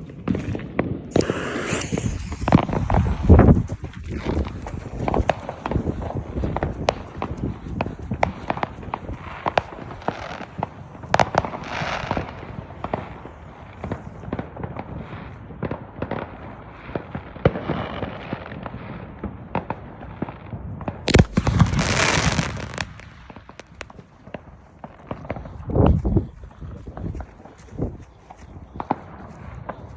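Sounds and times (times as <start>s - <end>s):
fireworks bangs and pops: 0.0s - 29.9s
dense rushing noise: 1.1s - 9.2s.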